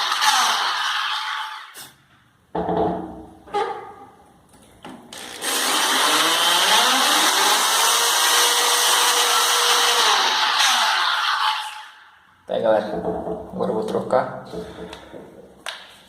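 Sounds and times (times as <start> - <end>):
electric drill boring into tile: 5.2 - 11.2.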